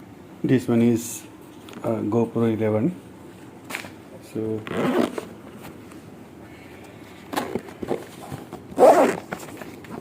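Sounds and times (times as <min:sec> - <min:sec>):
packaging rustling and scraping: 0:07.3 - 0:10.0.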